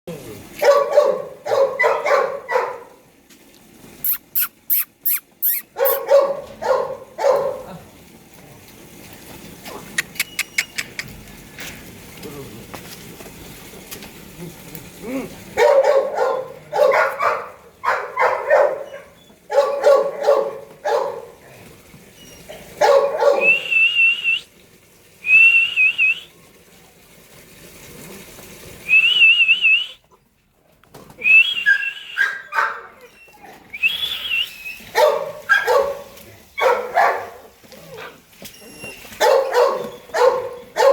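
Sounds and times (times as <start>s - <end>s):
puppies barking: 0.6s - 3.0s, 4.1s - 7.6s, 15.5s - 21.4s, 22.4s - 23.6s, 31.6s - 33.2s, 34.8s - 38.2s, 38.9s - 40.9s.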